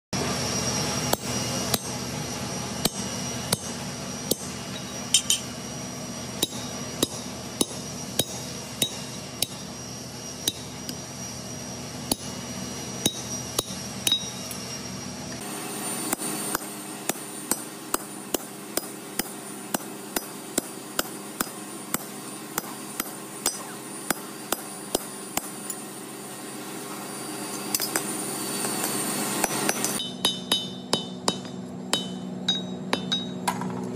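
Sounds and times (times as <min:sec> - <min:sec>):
steady low hum: 0:00.2 - 0:33.9
hammer striking iron on anvil: 0:01.1 - 0:02.0, 0:02.8 - 0:05.6, 0:06.4 - 0:09.8, 0:10.4 - 0:11.0, 0:12.1 - 0:12.3, 0:13.0 - 0:14.6, 0:16.1 - 0:25.8, 0:27.6 - 0:28.1, 0:28.8 - 0:33.8.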